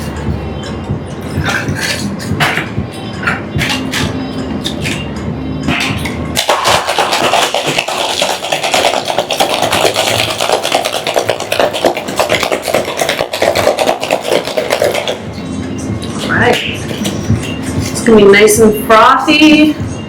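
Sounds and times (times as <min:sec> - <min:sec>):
ice rattling in cocktail shaker: 0:06.4 - 0:15.2.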